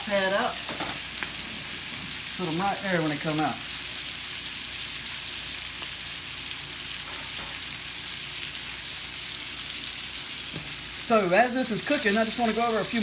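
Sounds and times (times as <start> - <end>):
steak sizzling in a skillet: 0.0 - 13.0.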